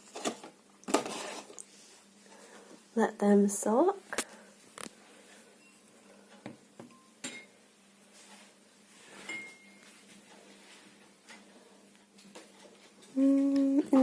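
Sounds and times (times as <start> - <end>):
ringing clink of dishes: 6.9 - 7.6, 9.3 - 9.8.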